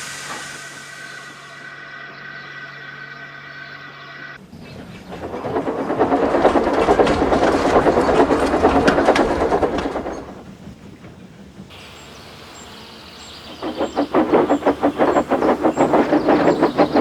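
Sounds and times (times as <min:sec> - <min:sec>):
freight train wheels rattling: 0:04.4 - 0:17.0.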